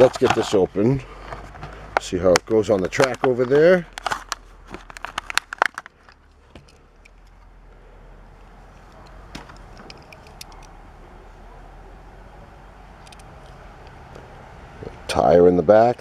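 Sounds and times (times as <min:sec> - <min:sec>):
steady low hum: 0:00.0 - 0:16.0
plastic package clicks and taps: 0:01.4 - 0:07.3, 0:13.0 - 0:14.0.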